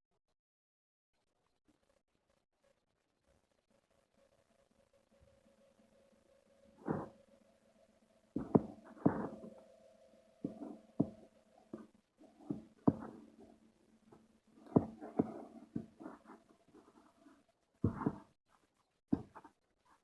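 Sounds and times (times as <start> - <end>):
faint steady hum: 2.6 - 20.0.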